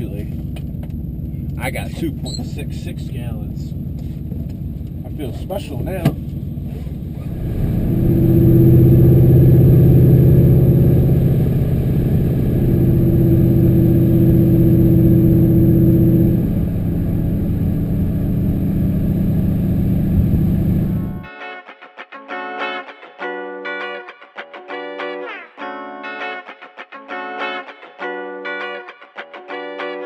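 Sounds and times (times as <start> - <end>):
car engine running under load: 0.0 - 21.3.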